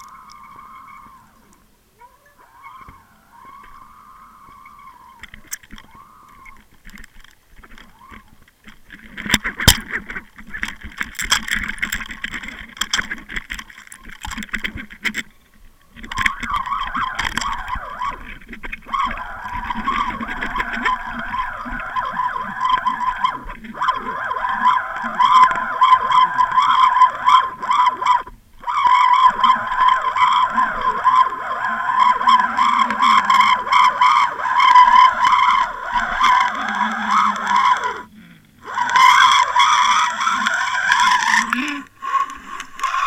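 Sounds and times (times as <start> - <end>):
water rushing underwater: 0.0 - 43.0
wavering hum: 0.0 - 43.0
sharp knocks and clicks: 5.2 - 15.4.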